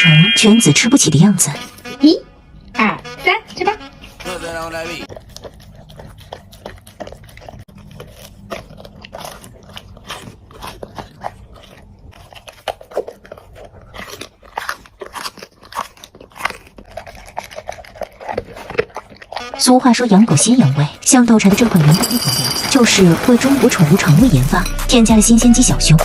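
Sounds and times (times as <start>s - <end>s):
dogs crunching dry kibble: 5.1s - 20.5s, 21.5s - 24.7s.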